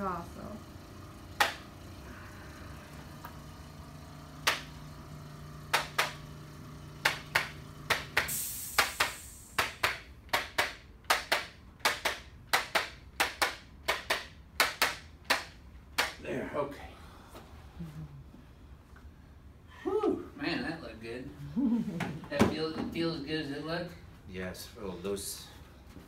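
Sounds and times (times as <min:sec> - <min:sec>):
low steady hum: 0:00.0 - 0:08.2
brief hiss: 0:08.2 - 0:09.6.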